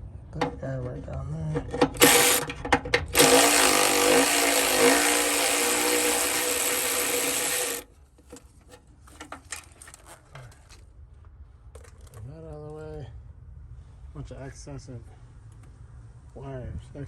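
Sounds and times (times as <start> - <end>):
power tool motor whine: 2.0 - 2.5, 3.1 - 7.8.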